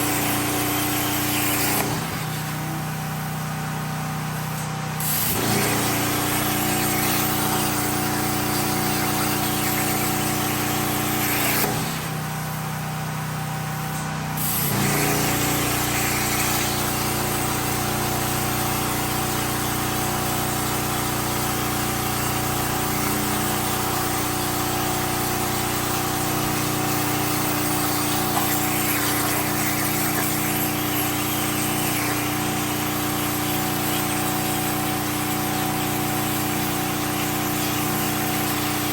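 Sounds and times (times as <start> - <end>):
electric air compressor running: 0.0 - 38.9
generator: 0.0 - 38.9
hiss: 4.3 - 12.6, 13.8 - 19.8, 22.2 - 38.9.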